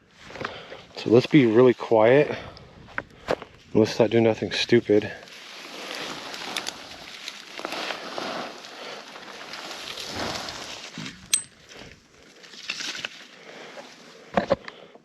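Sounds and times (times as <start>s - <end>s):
twigs and leaves crackling: 0.1s - 14.8s
footsteps in dry brush: 4.9s - 11.0s.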